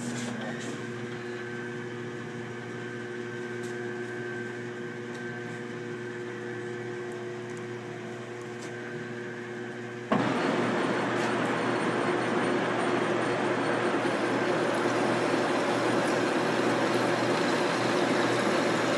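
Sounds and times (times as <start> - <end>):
lathe motor humming: 10.1 - 18.9.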